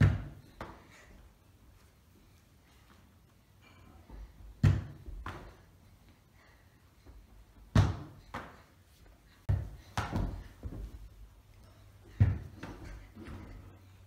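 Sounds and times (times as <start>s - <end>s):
football thudding: 0.0s - 0.7s, 4.6s - 5.5s, 7.7s - 8.5s, 9.5s - 10.9s, 12.2s - 13.0s
ball knocks and bounces: 4.6s - 5.5s.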